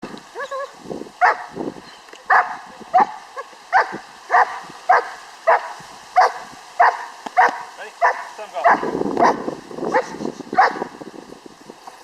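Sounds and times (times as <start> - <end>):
dog barking: 1.2 - 1.5, 2.3 - 10.9.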